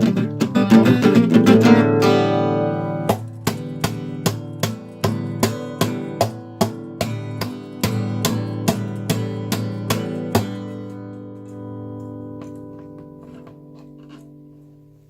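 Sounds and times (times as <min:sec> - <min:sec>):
acoustic guitar strumming chords: 0:00.0 - 0:14.6.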